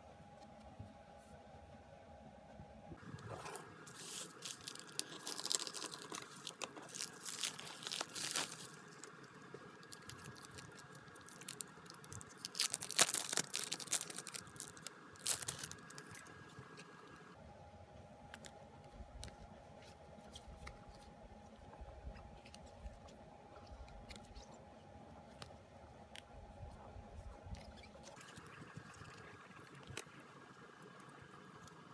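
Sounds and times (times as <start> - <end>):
packaging being torn and crinkled: 3.9 - 16.2.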